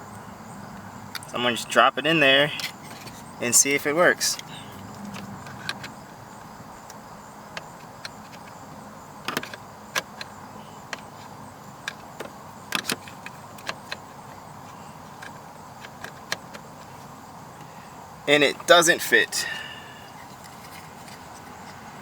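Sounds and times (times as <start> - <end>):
steady low hiss: 0.0 - 21.7
small plastic clicks and knocks: 9.2 - 14.0.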